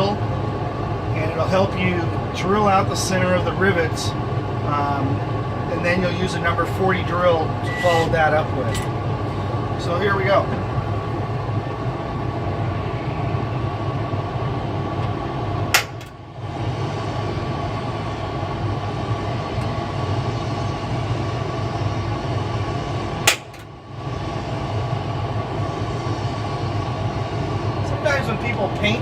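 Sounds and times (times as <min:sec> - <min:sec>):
sharp click: 0:23.3 - 0:23.7.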